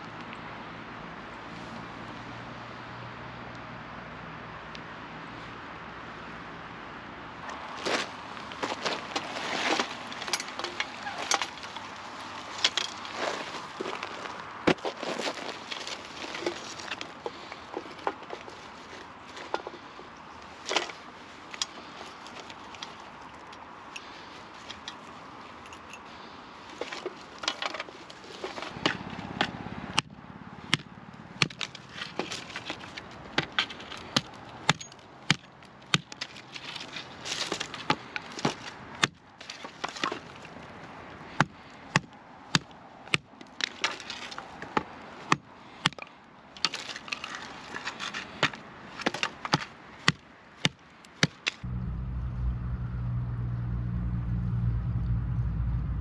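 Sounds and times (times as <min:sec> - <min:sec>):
outdoor background noise: 0:00.0 - 0:56.0.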